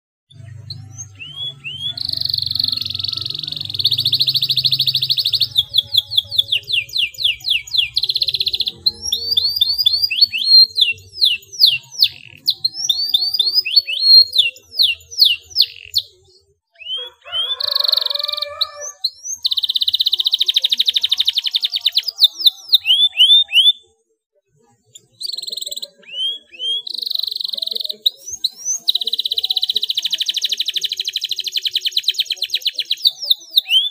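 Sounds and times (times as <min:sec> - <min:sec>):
canary singing trills: 0:00.3 - 0:24.0, 0:24.6 - 0:33.9.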